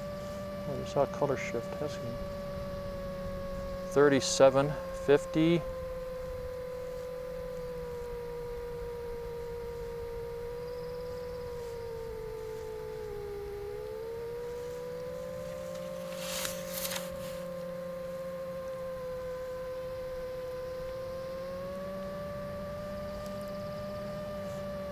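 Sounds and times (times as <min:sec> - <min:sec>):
low hum: 0:00.0 - 0:24.9
quadcopter motors droning: 0:00.0 - 0:24.9
brief crackle: 0:15.5 - 0:17.5.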